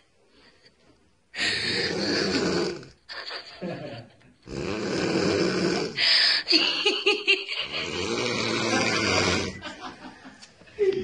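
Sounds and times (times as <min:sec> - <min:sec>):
woman snoring: 0:01.4 - 0:03.0, 0:04.5 - 0:06.2, 0:07.6 - 0:09.6.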